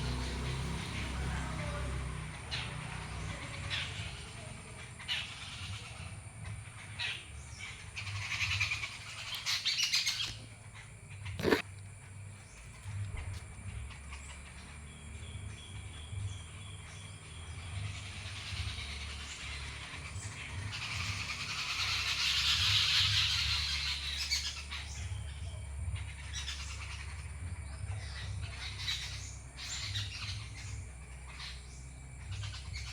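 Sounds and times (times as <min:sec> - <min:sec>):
small birds chirping: 0:00.0 - 0:32.9.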